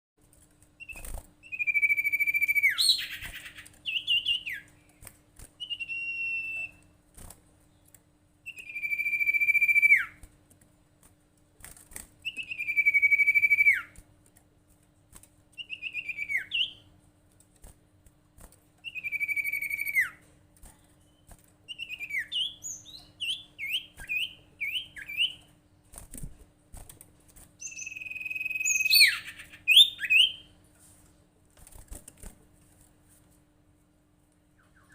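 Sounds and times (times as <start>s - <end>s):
faint steady hum: 0.2s - 34.9s
bird whistled calls: 0.8s - 4.6s, 8.5s - 10.2s, 18.9s - 20.2s, 27.6s - 30.4s.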